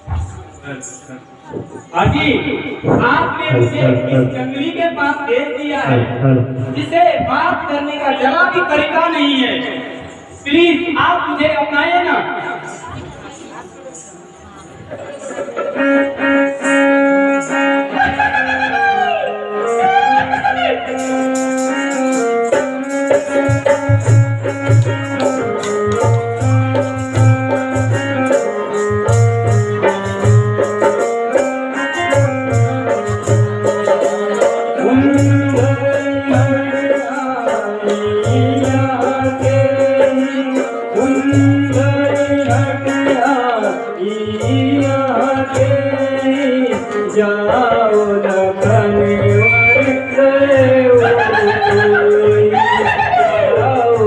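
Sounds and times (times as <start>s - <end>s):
shaker rhythm: 12.6s - 18.5s, 19.7s - 54.0s.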